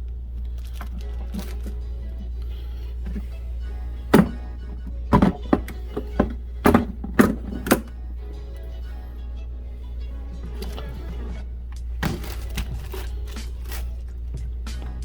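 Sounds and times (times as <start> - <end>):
background music: 0.0 - 15.0
knocks on cutting board: 4.2 - 4.4.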